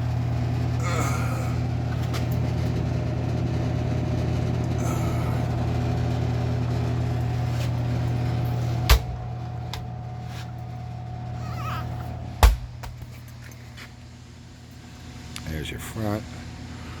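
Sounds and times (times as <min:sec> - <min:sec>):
refrigeration unit humming: 0:00.0 - 0:17.0
sharp thump: 0:08.9 - 0:09.3, 0:12.4 - 0:13.0.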